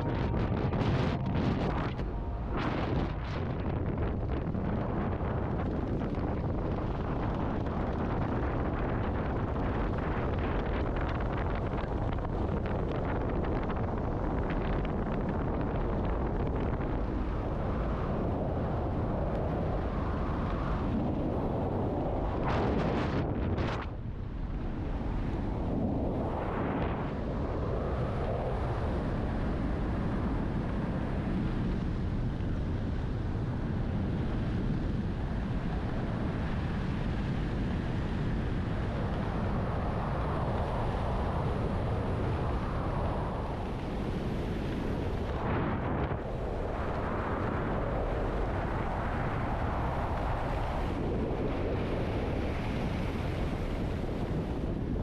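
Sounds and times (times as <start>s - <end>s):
wind buffeting microphone: 0.0s - 55.0s.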